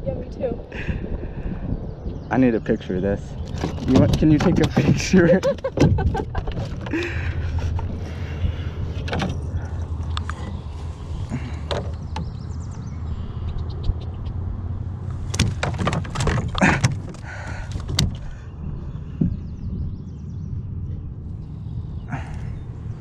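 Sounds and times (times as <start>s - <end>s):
camera handling knocks and rustles: 15.2s - 18.3s.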